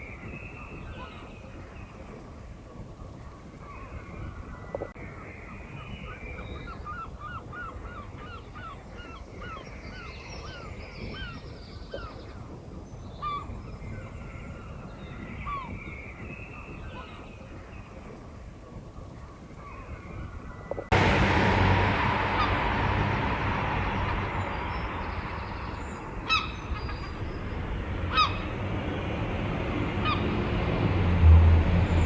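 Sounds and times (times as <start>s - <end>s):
low wind rumble: 0.0s - 32.0s
birds chirping: 22.2s - 29.2s, 29.8s - 30.6s
bird calling repeatedly: 26.3s - 27.3s.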